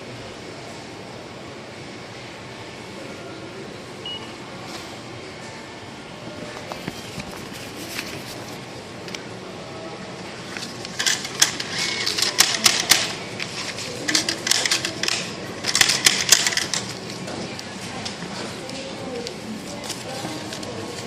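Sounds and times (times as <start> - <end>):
ticket machine mechanism clattering: 10.8 - 17.2.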